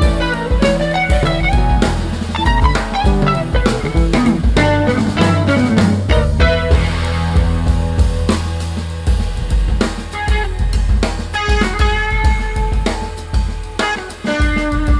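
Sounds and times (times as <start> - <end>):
plucked guitar line: 0.0 - 8.3
bass: 0.0 - 14.9
drum kit beat: 0.0 - 14.9.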